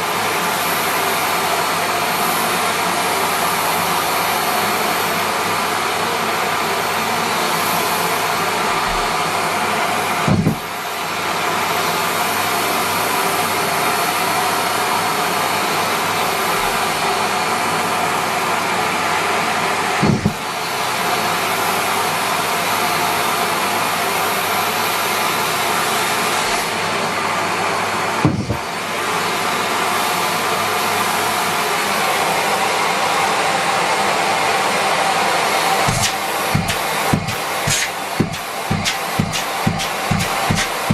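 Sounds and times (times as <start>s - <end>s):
vacuum cleaner running: 0.0s - 40.9s
knocks in vacuum: 10.3s - 10.7s, 20.0s - 20.4s, 28.2s - 28.7s, 35.9s - 40.9s.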